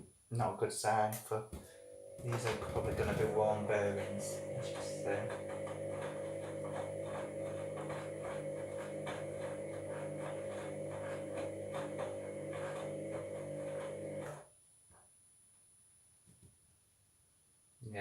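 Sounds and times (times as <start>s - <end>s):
washing machine motor whine: 1.6s - 14.4s
grinding rasp: 2.2s - 14.4s.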